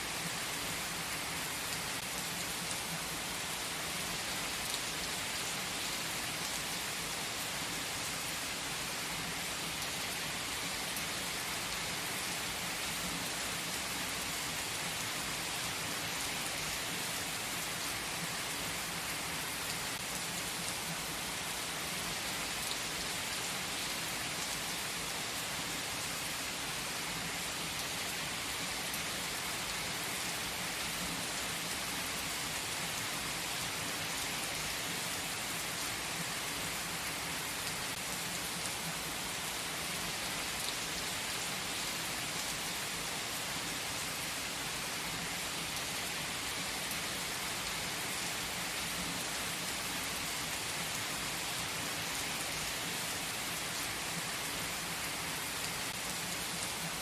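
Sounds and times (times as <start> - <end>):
steady rain-like hiss: 0.0 - 57.0.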